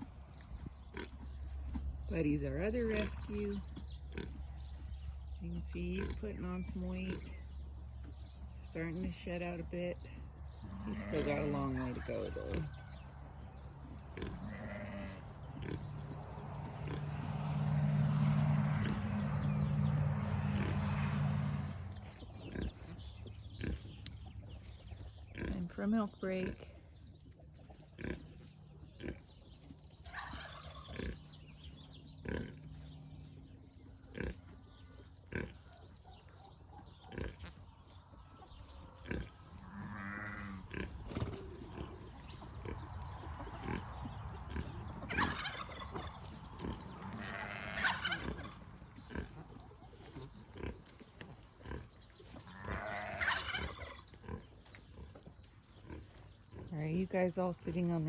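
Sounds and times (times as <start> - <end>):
farm animals calling: 0.0 - 58.0.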